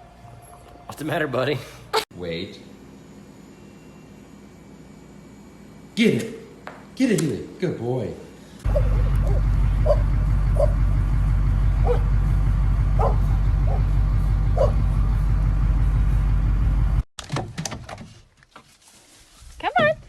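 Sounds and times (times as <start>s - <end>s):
dog yipping: 8.7s - 10.0s, 10.6s - 10.8s, 11.8s - 12.1s, 13.0s - 13.9s, 14.6s - 14.8s
loud low rumble: 8.7s - 17.0s.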